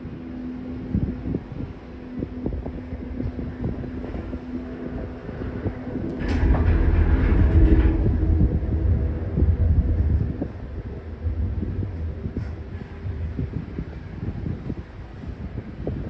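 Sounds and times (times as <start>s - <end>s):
gondola cabin humming: 0.0s - 16.0s
wheels rumbling over rollers: 5.3s - 14.8s.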